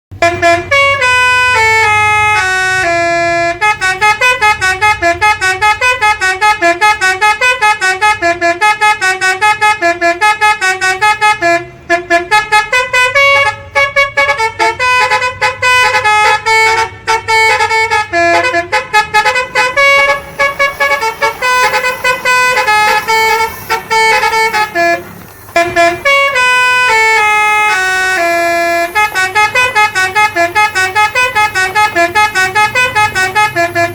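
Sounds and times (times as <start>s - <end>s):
musical horn playing a tune: 0.1s - 33.9s.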